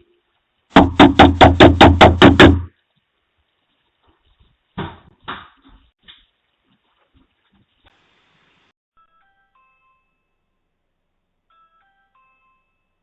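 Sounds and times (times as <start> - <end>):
knocks on a door: 0.8 - 2.7
pounding on a door: 0.8 - 2.7.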